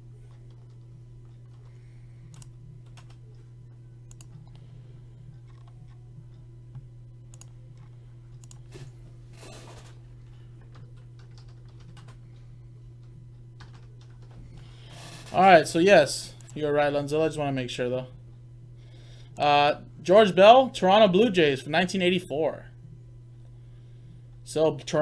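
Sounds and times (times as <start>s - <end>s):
low hum: 0.0s - 25.0s
keyboard and mouse clicks: 2.3s - 3.2s, 6.7s - 8.9s.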